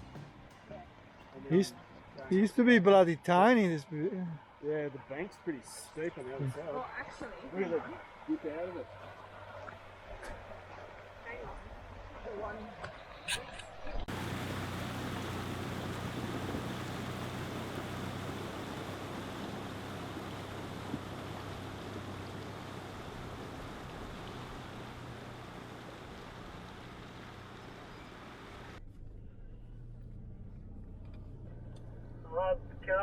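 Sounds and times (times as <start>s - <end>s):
rushing water or wind: 14.1s - 28.8s
engine idling: 14.1s - 33.0s.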